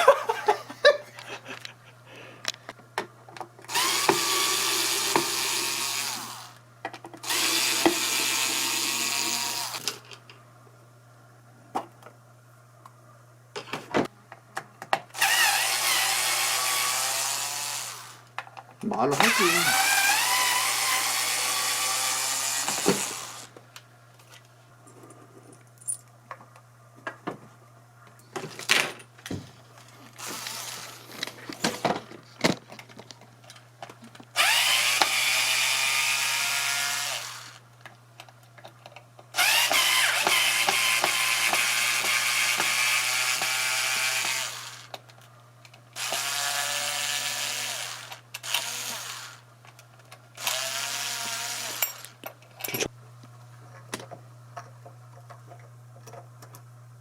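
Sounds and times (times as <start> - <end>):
cordless power drill spinning: 3.7 - 6.6, 7.2 - 10.0, 15.2 - 18.3, 19.1 - 23.6, 30.1 - 31.8, 34.3 - 37.6, 39.3 - 45.0, 46.0 - 49.5, 50.4 - 52.2.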